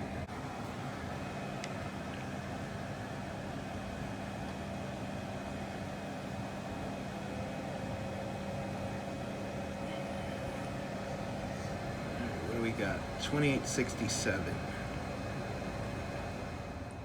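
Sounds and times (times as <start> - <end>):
fan noise: 0.0 - 17.0
electrical hum: 5.2 - 17.0.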